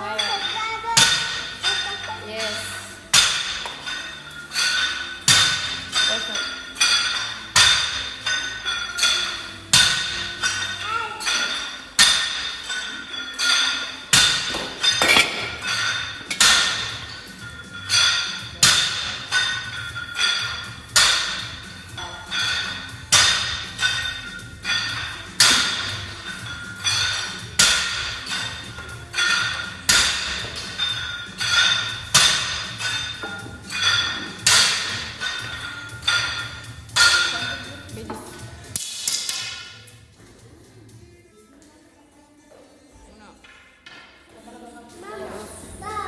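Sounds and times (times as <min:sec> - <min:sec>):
background music: 0:00.0 - 0:46.0
weights clanking on floor: 0:03.2 - 0:38.6.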